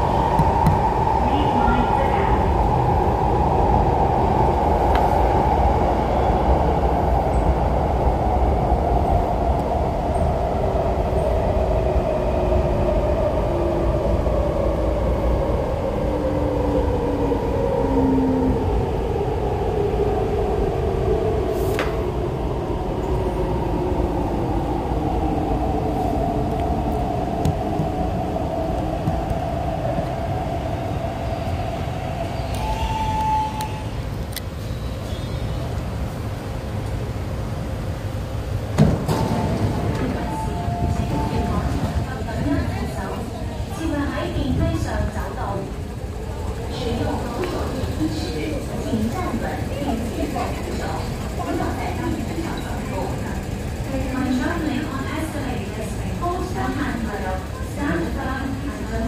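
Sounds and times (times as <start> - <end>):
train wheels rumbling on rail: 0.0 - 59.0.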